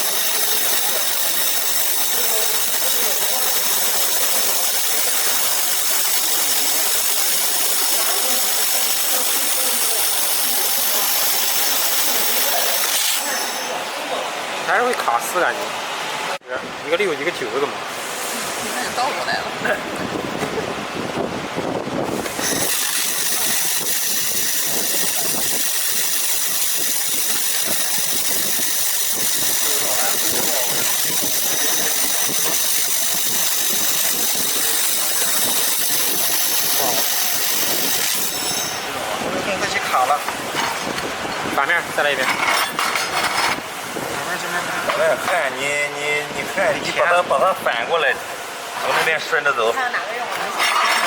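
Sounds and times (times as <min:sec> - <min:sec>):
laser welding machine hissing: 0:22.2 - 0:38.8.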